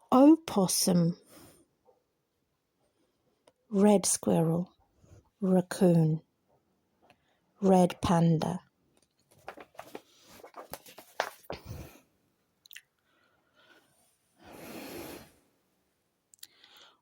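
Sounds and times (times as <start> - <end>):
soft rustle: 9.1 - 12.0.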